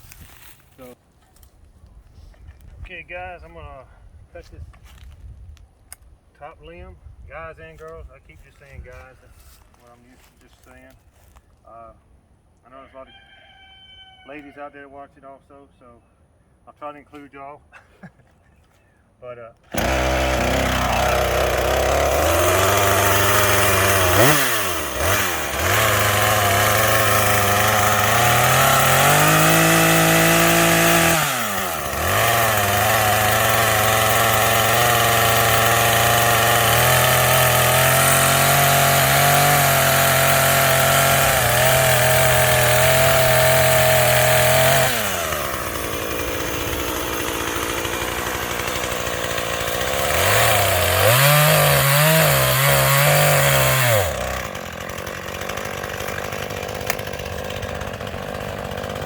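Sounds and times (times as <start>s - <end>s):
gas-powered saw cutting wood: 19.6s - 59.0s.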